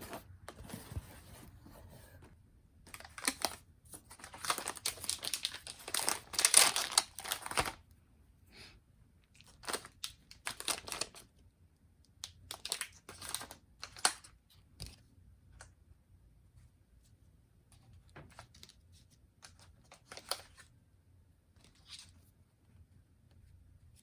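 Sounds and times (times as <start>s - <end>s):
packaging crinkling and tearing: 2.9s - 7.8s, 9.4s - 11.3s, 12.5s - 14.3s.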